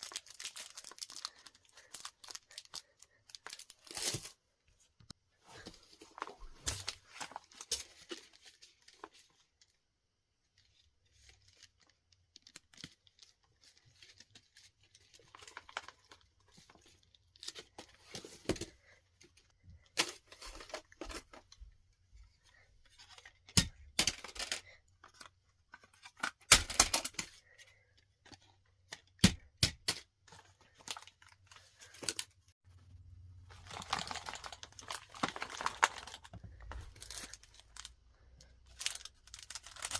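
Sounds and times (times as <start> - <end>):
packaging rustling and tearing: 0.0 - 4.4, 33.4 - 39.9.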